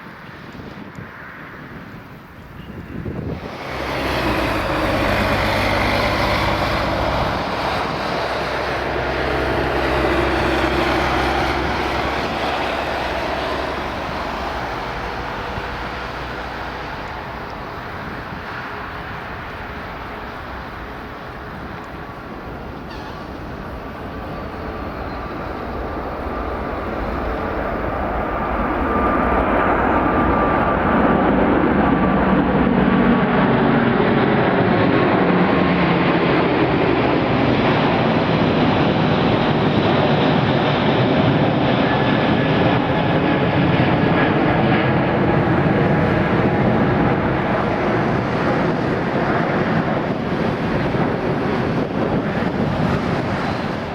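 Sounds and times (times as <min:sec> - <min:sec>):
jet engines roaring: 0:00.0 - 0:53.9.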